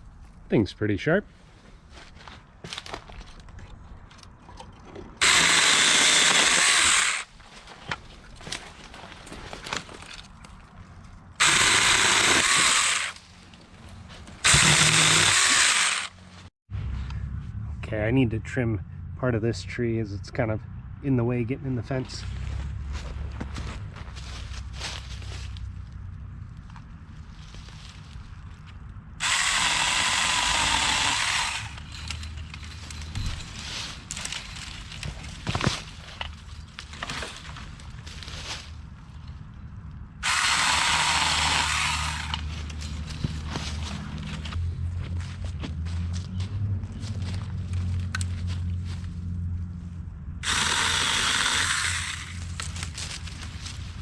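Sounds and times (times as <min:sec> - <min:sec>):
branches rustling: 0:01.3 - 0:04.5, 0:05.2 - 0:16.5, 0:22.2 - 0:54.0
electric chainsaw running: 0:05.2 - 0:07.3, 0:11.4 - 0:13.2, 0:14.4 - 0:16.2, 0:29.2 - 0:34.7, 0:40.2 - 0:44.6, 0:50.4 - 0:53.3.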